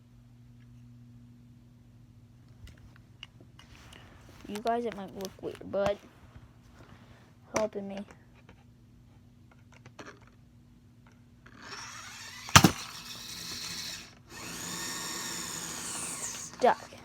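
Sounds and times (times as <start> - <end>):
small electric motor whining: 11.5 - 17.0
sharp crack: 11.6 - 16.7.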